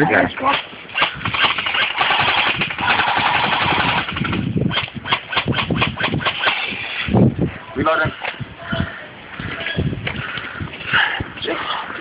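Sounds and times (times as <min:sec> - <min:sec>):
airsoft gun firing full-auto: 0:00.5 - 0:06.8.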